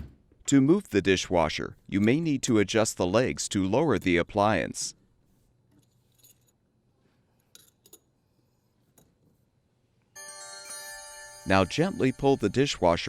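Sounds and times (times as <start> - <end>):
ringing chime: 10.2 - 13.0.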